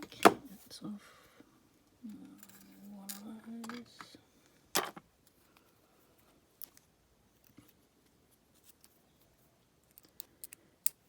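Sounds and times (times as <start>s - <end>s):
small metallic clicks and taps: 9.8s - 11.0s.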